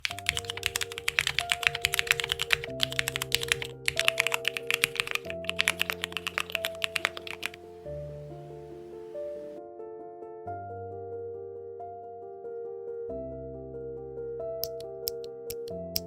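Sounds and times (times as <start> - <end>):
fast typing on mechanical keyboard: 0.0 - 7.6, 14.6 - 16.0.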